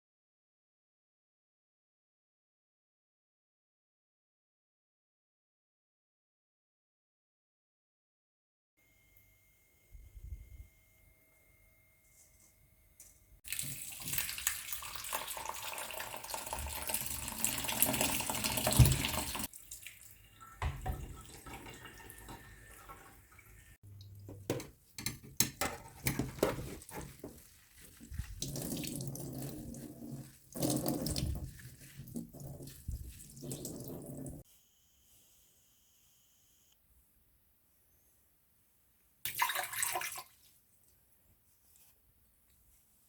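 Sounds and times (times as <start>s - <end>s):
tap water running into sink: 13.5s - 27.4s, 28.1s - 34.4s.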